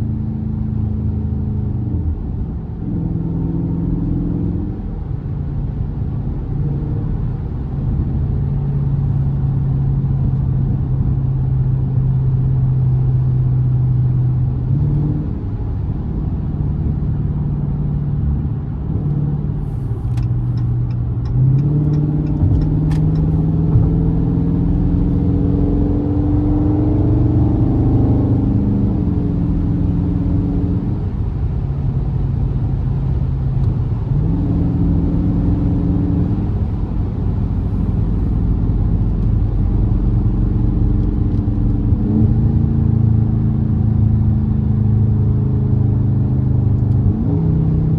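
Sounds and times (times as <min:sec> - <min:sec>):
car engine accelerating: 0:06.0 - 0:47.9.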